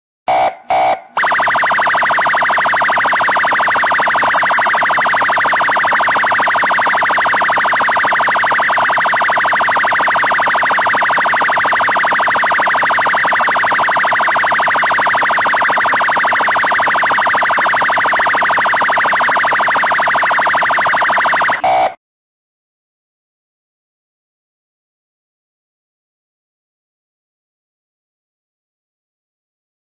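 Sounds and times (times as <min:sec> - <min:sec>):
fast warbling siren: 0:00.3 - 0:22.0
police siren chirps: 0:00.3 - 0:22.0.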